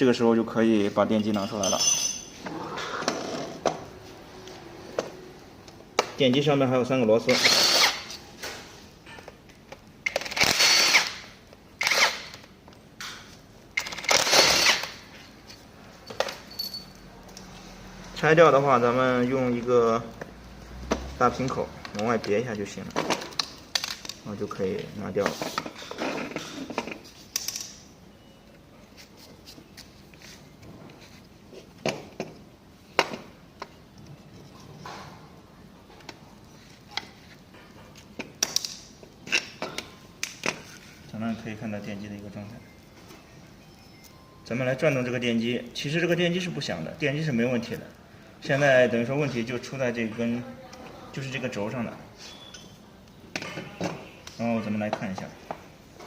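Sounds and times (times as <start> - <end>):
power drill whining: 7.4 - 8.0, 10.4 - 11.2.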